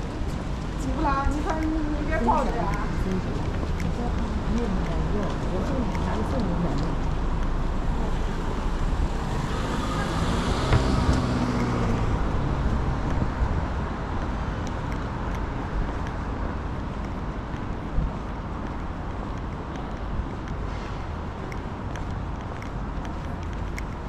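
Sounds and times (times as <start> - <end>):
steady traffic noise: 0.0 - 24.0
vehicle passing on wet road: 6.9 - 13.7.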